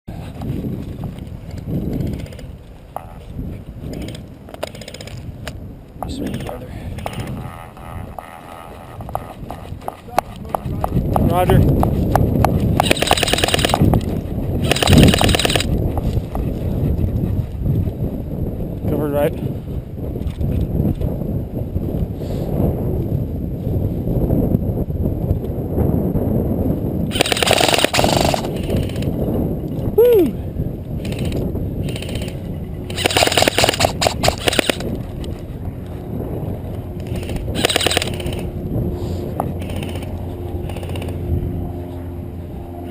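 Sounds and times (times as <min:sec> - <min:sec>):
wind rumble on microphone: 0:00.1 - 0:42.9
airsoft gun full-auto bursts: 0:12.8 - 0:13.9, 0:14.6 - 0:15.7, 0:27.1 - 0:29.0, 0:32.9 - 0:34.8, 0:37.2 - 0:38.4.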